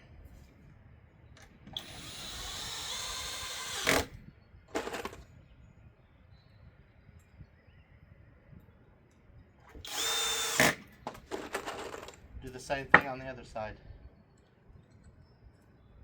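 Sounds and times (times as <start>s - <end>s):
power drill driving screw into wood: 1.7s - 5.2s, 9.7s - 12.2s.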